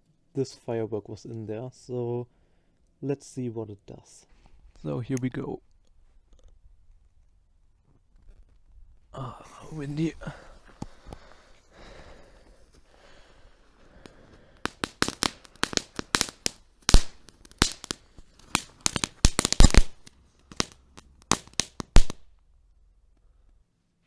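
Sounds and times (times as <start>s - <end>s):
firework crackling pops: 9.5s - 22.4s.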